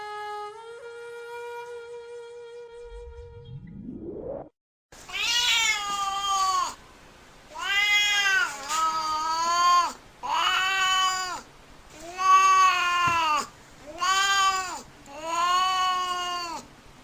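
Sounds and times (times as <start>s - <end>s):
short rising sweep: 2.6s - 4.6s
cat meowing: 5.1s - 6.8s, 7.5s - 9.7s.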